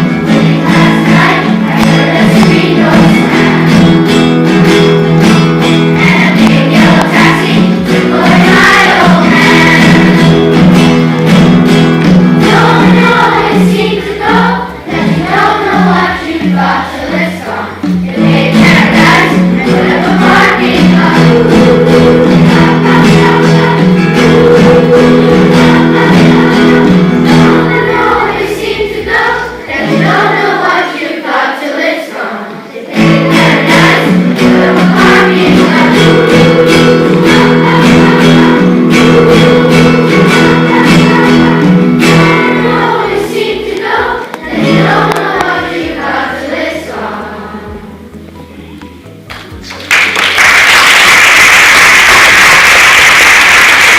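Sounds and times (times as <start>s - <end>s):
children singing: 0.0s - 48.1s
instrumental accompaniment: 0.0s - 53.9s.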